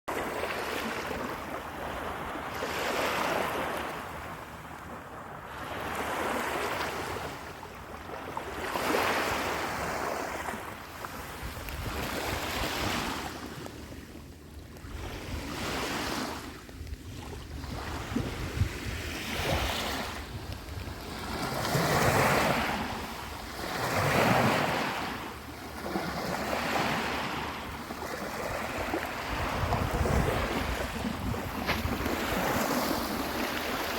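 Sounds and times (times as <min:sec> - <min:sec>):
wind rumbling on microphone: 0:11.1 - 0:13.3, 0:14.8 - 0:25.2, 0:26.8 - 0:33.9
sea waves washing in: 0:17.2 - 0:33.9.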